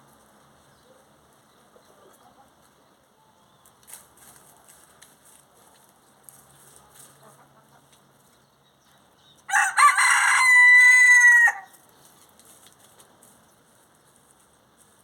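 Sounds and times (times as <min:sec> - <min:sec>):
rooster crowing: 0:09.5 - 0:11.8.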